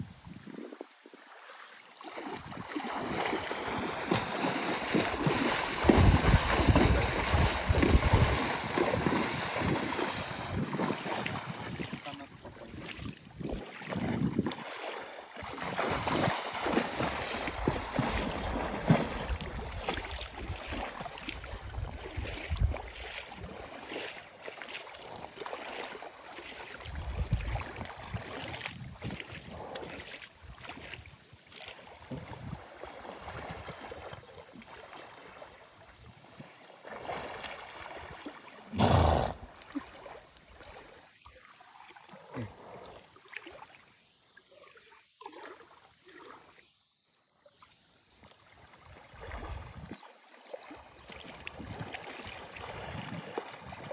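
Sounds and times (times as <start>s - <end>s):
wind noise on microphone: 0.0s - 1.2s, 4.9s - 14.6s, 17.0s - 23.6s, 26.8s - 31.2s, 32.0s - 32.7s, 49.2s - 50.0s, 51.6s - 51.9s
water sloshing and splashing: 0.6s - 38.8s, 39.4s - 46.7s, 48.2s - 53.9s.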